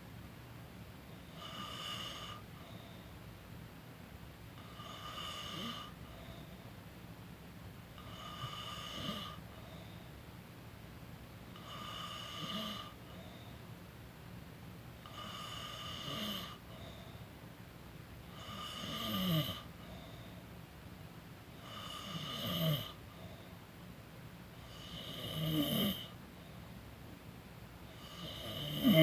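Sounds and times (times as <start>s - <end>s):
person snoring: 4.7s - 5.9s, 24.8s - 26.1s, 28.0s - 29.0s.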